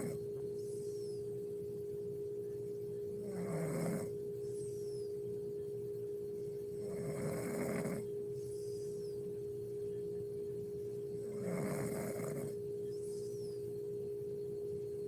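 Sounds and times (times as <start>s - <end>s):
woman snoring: 0.0s - 0.2s, 3.2s - 4.1s, 6.8s - 8.0s, 11.2s - 12.6s
steady humming tone: 0.0s - 15.0s.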